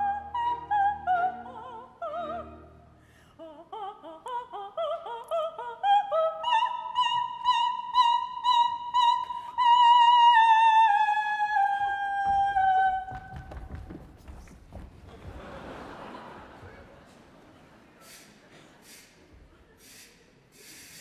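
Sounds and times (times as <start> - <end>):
soprano singing opera: 0.0 - 13.8.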